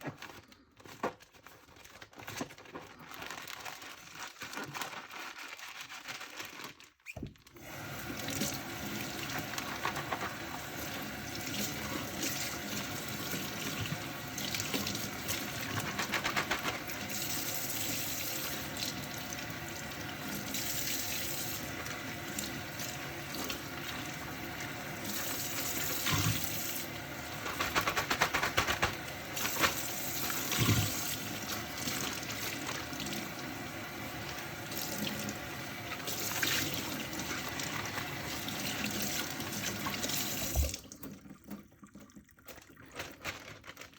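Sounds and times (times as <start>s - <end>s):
tap running into sink: 39.6s - 41.2s.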